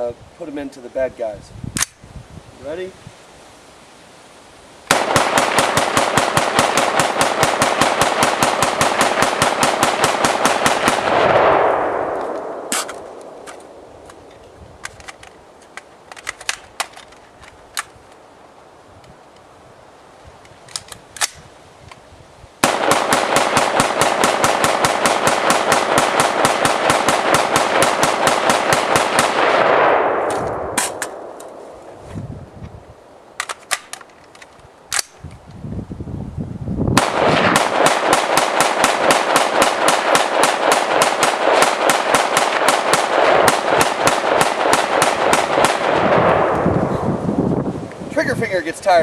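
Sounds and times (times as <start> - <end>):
rapid sharp bangs: 4.9 - 11.7, 22.6 - 29.9, 37.0 - 46.4.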